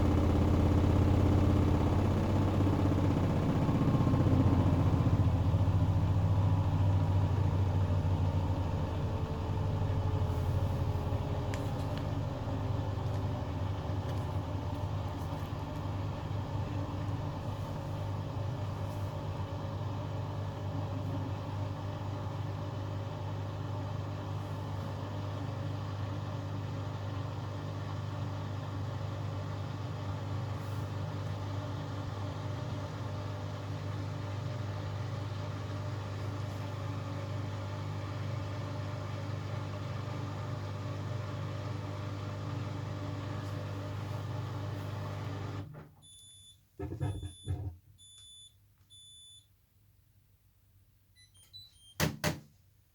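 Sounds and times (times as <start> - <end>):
washing machine humming: 0.0 - 49.4
short high beeps: 46.0 - 49.5
thumps: 46.8 - 47.8.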